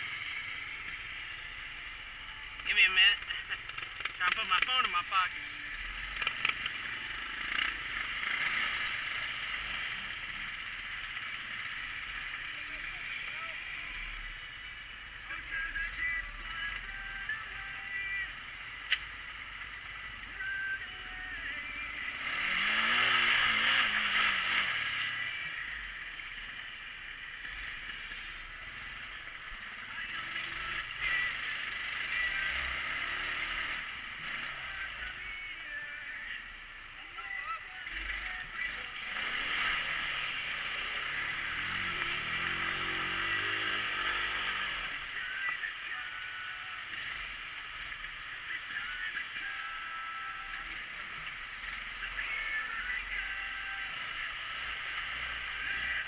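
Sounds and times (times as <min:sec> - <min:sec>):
utv engine revving: 0:05.7 - 0:12.5, 0:18.9 - 0:35.2, 0:37.9 - 0:45.2, 0:46.8 - 0:56.0
off-road vehicle rushing noise: 0:06.2 - 0:10.5, 0:22.1 - 0:25.2, 0:38.7 - 0:45.0.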